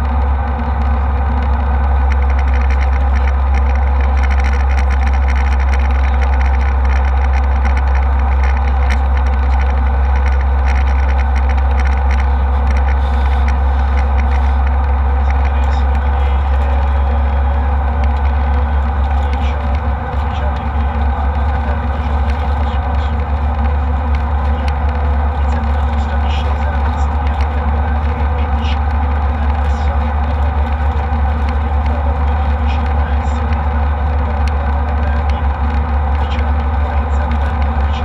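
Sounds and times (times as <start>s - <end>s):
jet engine cabin drone: 0.0s - 38.0s.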